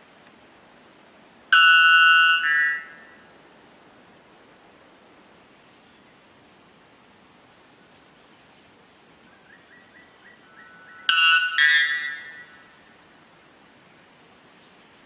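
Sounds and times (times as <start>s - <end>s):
bird two-note call: 1.5s - 3.1s, 11.1s - 12.6s
high-pitched insect drone: 5.5s - 15.0s.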